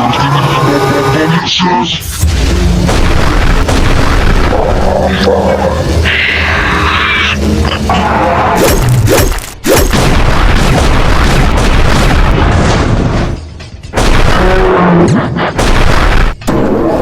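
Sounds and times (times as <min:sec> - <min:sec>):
music: 0:00.0 - 0:10.0, 0:12.2 - 0:17.0
booms and crashing effects: 0:02.1 - 0:06.1, 0:08.6 - 0:17.0.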